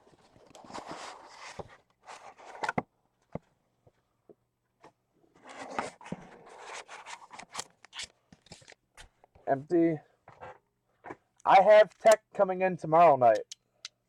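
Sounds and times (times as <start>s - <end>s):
cardboard rustling and scraping: 0.1s - 2.8s, 5.4s - 8.7s.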